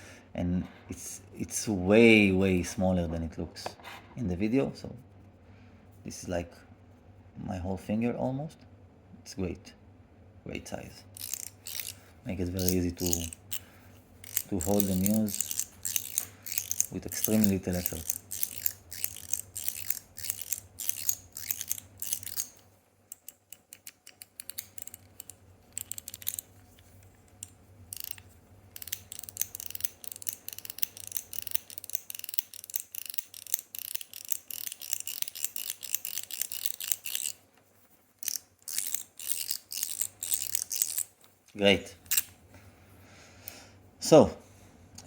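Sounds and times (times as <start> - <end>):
metal fidget slider clicking: 11.2 - 13.6, 14.2 - 26.5, 27.4 - 37.4, 38.2 - 41.1.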